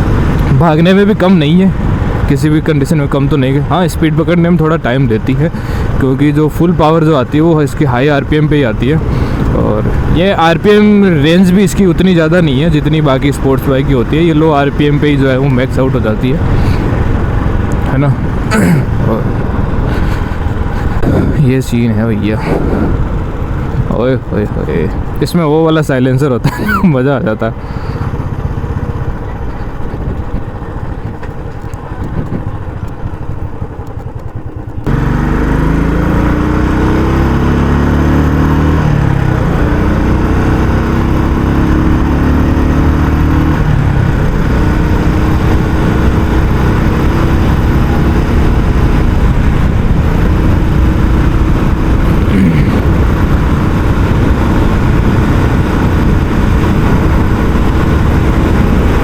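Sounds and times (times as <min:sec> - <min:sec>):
motorcycle engine revving: 0:00.0 - 0:21.4, 0:22.0 - 0:25.2, 0:27.4 - 0:59.0.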